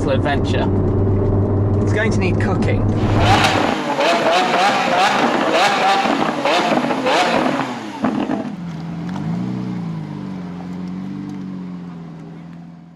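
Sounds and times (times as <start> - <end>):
car engine revving hard: 3.0 - 8.5
engine cracks: 3.0 - 8.6.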